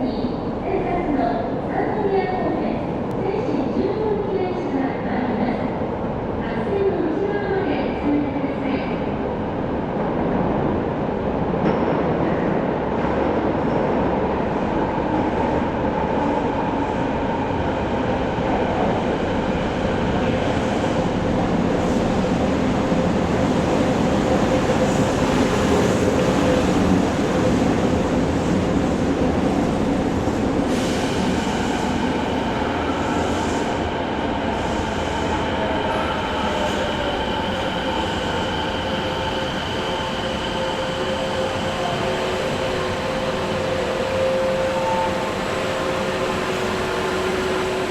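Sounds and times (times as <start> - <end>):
train wheels rushing on rail: 10.0 - 47.9.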